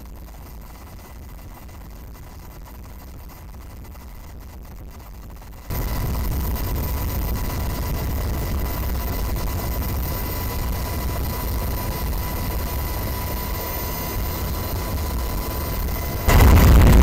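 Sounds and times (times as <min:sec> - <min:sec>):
faint high machinery whine: 0:00.0 - 0:17.0
ship low rumble: 0:16.1 - 0:17.0.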